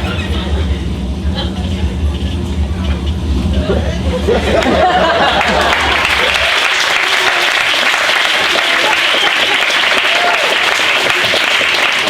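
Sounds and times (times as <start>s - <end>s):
audience applauding: 4.6s - 12.0s.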